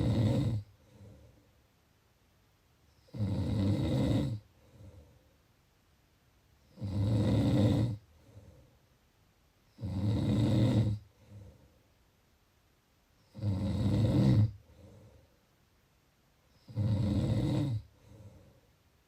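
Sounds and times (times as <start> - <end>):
person snoring: 0.0 - 1.2, 3.0 - 5.0, 6.7 - 8.4, 9.8 - 11.4, 13.2 - 14.9, 16.6 - 18.5
quiet breath out: 0.6 - 1.6, 4.5 - 5.5, 8.1 - 8.9, 11.0 - 12.0, 14.5 - 15.5, 17.8 - 18.8.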